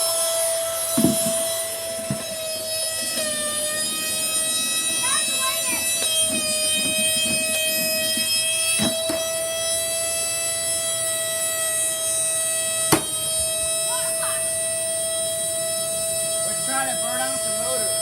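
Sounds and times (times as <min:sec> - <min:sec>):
vacuum cleaner motor whining: 0:00.0 - 0:18.0.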